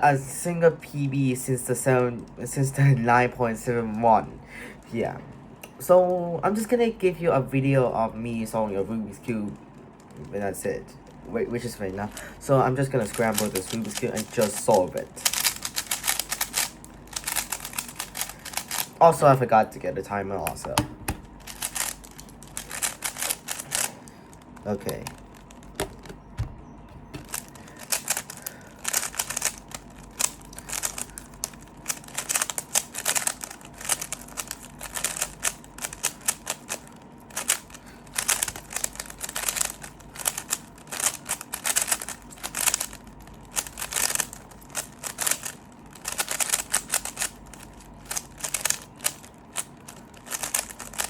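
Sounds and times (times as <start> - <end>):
plastic puzzle cube clicking: 13.0 - 18.9, 20.4 - 26.2, 27.1 - 51.0.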